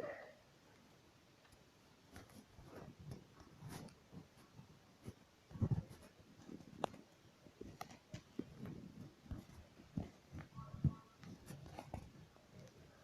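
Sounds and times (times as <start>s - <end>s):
faint handling noise: 0.6s - 13.0s
soft thumps and knocks: 2.1s - 12.8s.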